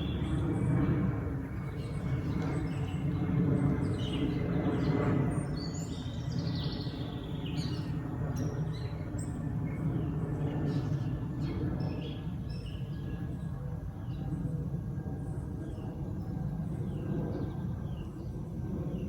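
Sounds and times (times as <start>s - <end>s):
songbirds chirping: 0.0s - 14.5s.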